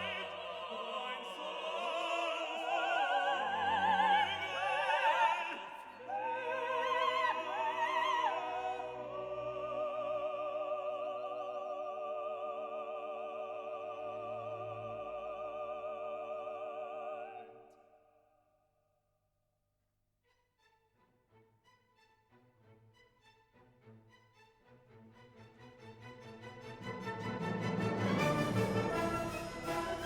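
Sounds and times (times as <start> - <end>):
operatic singing with vibrato: 0.0 - 17.9, 26.7 - 30.0.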